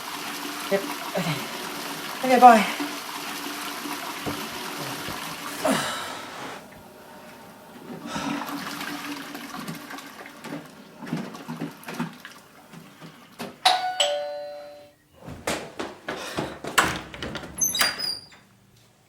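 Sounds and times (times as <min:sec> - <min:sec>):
water rushing: 0:00.0 - 0:06.6
ding-dong doorbell: 0:13.6 - 0:15.0.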